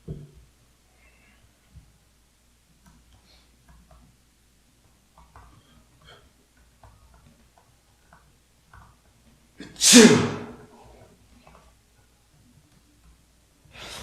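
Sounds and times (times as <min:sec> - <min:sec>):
man sneezing: 0:09.6 - 0:10.6.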